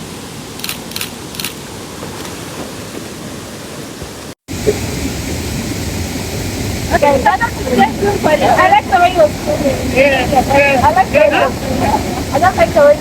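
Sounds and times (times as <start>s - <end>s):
flowing water: 0.0s - 13.0s.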